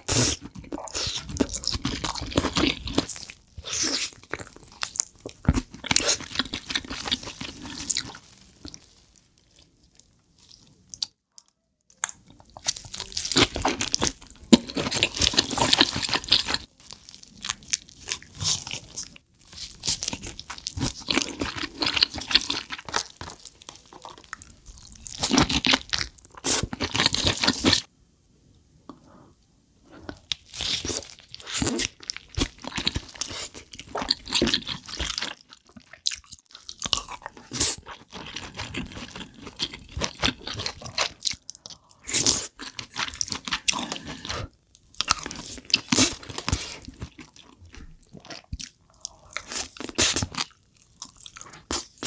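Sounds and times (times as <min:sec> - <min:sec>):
chewing: 0:00.0 - 0:27.9, 0:30.0 - 0:52.0
crab shell crunching: 0:11.0 - 0:27.9, 0:30.1 - 0:52.0.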